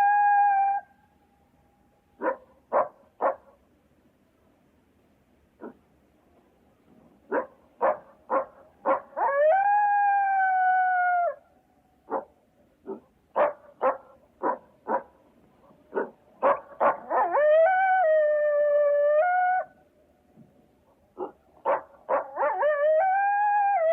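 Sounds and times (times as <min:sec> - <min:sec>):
dog barking: 0:02.2 - 0:03.6, 0:05.6 - 0:05.8, 0:07.3 - 0:09.1, 0:12.1 - 0:17.4, 0:21.2 - 0:22.6
dog howling: 0:16.8 - 0:19.7, 0:22.1 - 0:23.9.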